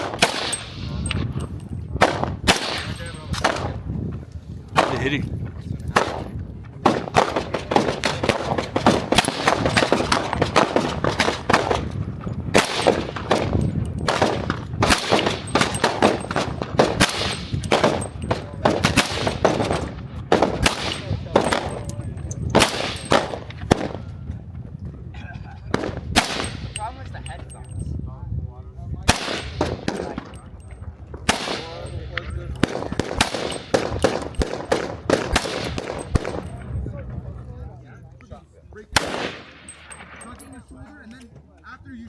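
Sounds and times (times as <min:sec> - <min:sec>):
gunshots echoing: 0:00.0 - 0:03.8, 0:05.9 - 0:24.0, 0:25.8 - 0:27.8, 0:29.1 - 0:30.7, 0:31.3 - 0:36.6.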